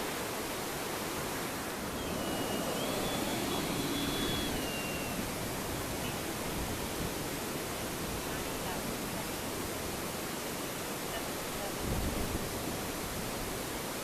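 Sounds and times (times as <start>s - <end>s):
electric ducted fan whine: 0.0s - 11.0s
wind buffeting microphone: 1.9s - 7.4s.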